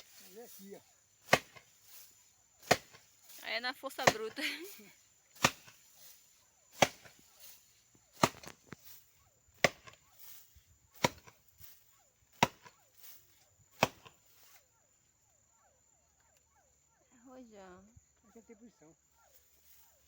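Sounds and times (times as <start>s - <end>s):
axe chopping wood: 1.2s - 1.7s, 2.6s - 3.1s, 4.0s - 4.4s, 5.3s - 5.9s, 6.7s - 7.5s, 8.1s - 8.9s, 9.5s - 10.2s, 10.9s - 11.4s, 12.3s - 12.8s, 13.7s - 14.3s.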